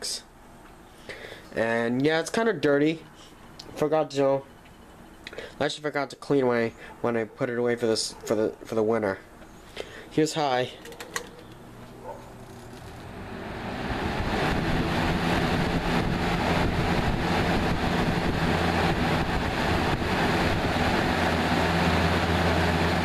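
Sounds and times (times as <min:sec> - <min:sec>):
low motor hum: 0:11.3 - 0:23.0
box fan air rushing: 0:11.6 - 0:23.0.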